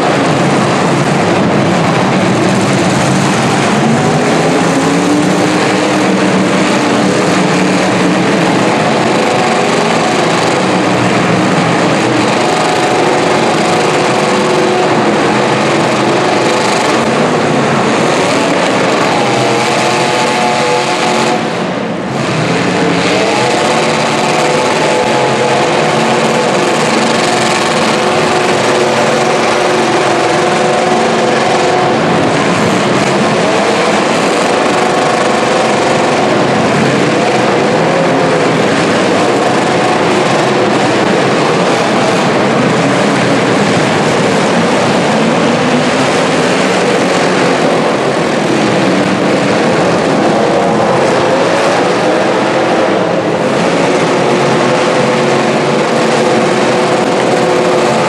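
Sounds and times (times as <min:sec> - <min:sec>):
car engines revving: 0:00.0 - 0:58.0.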